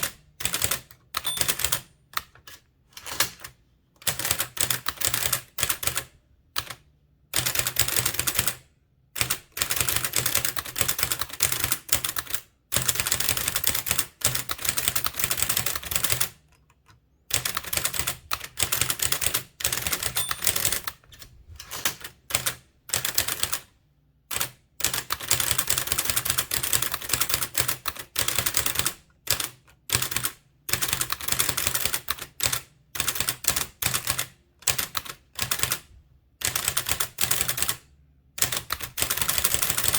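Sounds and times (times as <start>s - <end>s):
typewriter keystrokes clacking: 0.0s - 6.8s, 17.3s - 23.6s, 38.4s - 39.9s.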